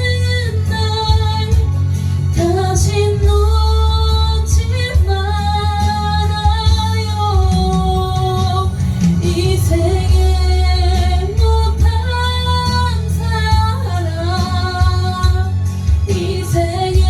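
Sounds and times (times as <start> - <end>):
karaoke backing track: 0.0 - 17.0
woman singing: 0.0 - 17.0.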